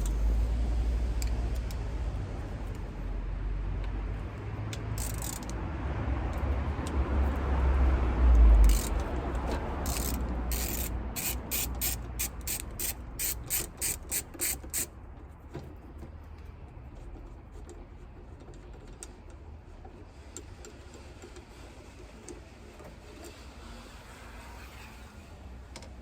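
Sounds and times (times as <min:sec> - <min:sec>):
ratchet wrench clicking: 0:04.7 - 0:05.6, 0:08.3 - 0:14.9.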